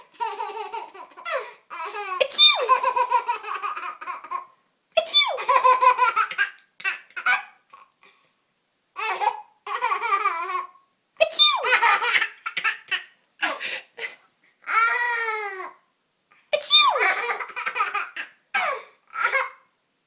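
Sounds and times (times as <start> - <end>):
baby laughing: 0.0 - 7.9, 9.0 - 13.8, 16.8 - 19.6
baby squealing: 1.2 - 3.1, 5.0 - 5.6, 11.3 - 13.6, 16.7 - 19.6.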